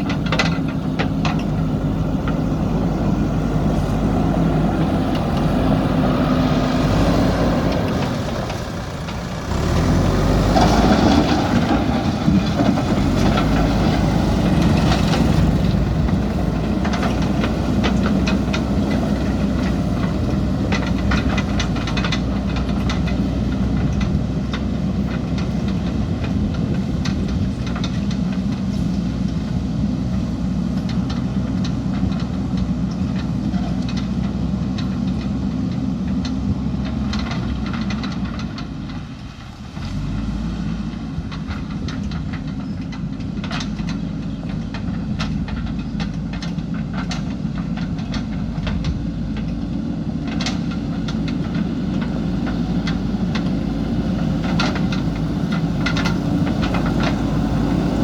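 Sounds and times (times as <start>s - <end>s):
clanks and knocks: 0.0s - 6.8s, 7.6s - 40.1s, 40.9s - 58.0s
diesel engine running: 0.0s - 58.0s.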